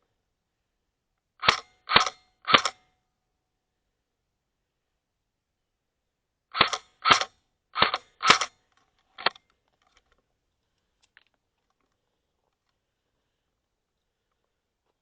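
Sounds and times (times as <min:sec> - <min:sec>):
airsoft gun firing bursts: 0:01.4 - 0:02.8, 0:06.5 - 0:08.6.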